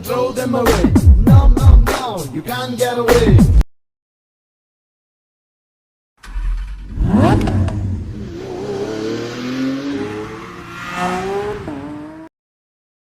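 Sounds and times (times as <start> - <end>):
vehicle engine accelerating: 6.2 - 12.3.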